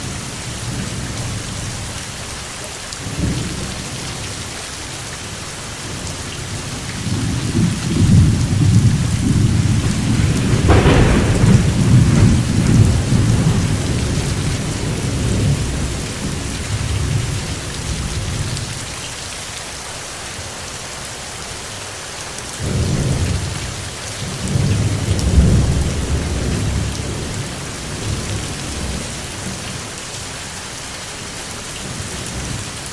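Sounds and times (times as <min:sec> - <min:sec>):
steady rain: 0:00.0 - 0:32.9
thunder rumbling: 0:07.0 - 0:18.6, 0:22.6 - 0:29.6
sharp thunder crack: 0:07.6 - 0:17.4.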